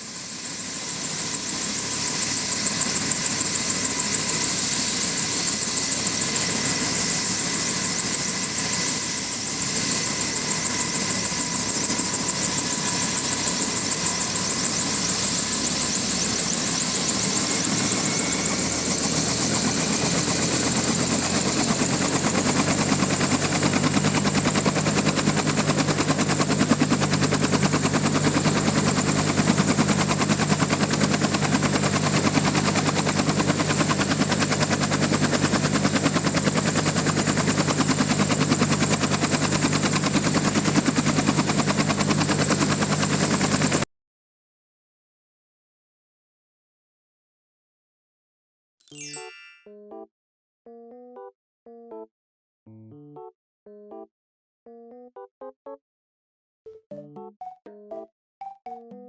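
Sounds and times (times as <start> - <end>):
helicopter rotor chop: 0.0 - 43.9
helicopter turbine whine: 0.0 - 43.9.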